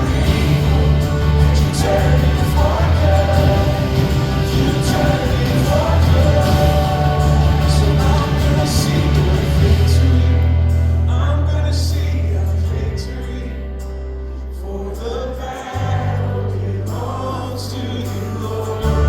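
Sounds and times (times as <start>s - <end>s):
strong steady bass: 0.0s - 13.5s
worship music with singing: 0.0s - 19.0s.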